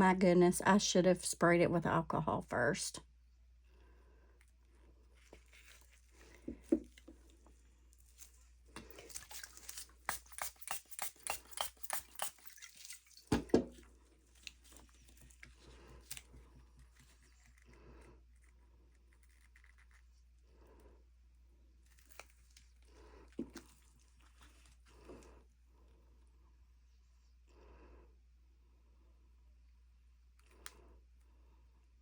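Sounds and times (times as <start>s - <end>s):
spray bottle hissing sprays: 9.4s - 12.6s.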